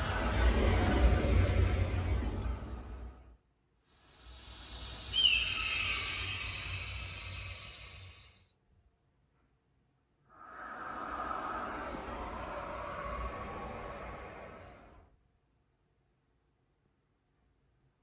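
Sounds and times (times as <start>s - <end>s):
airy shimmering tone: 4.3s - 8.0s.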